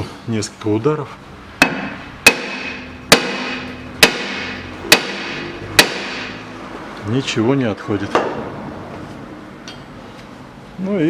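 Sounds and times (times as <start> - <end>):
hammer striking metal hub: 1.6 - 6.5.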